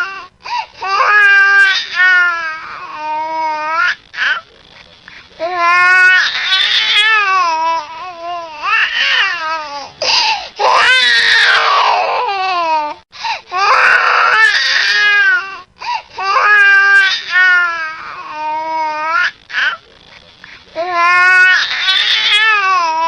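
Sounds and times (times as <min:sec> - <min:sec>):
baby crying: 0:00.0 - 0:04.5, 0:05.4 - 0:19.8, 0:20.8 - 0:23.0
baby gasping for breath: 0:10.0 - 0:10.6, 0:13.2 - 0:13.5.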